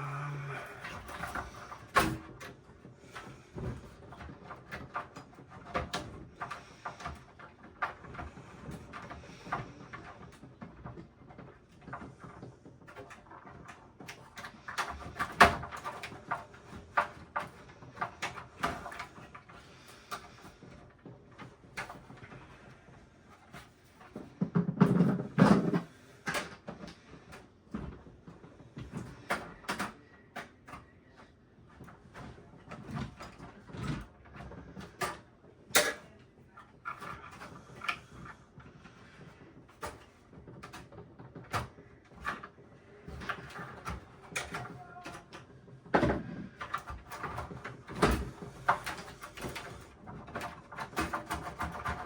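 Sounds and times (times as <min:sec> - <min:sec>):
clicks and taps of parts and tools: 0:34.8 - 0:38.3.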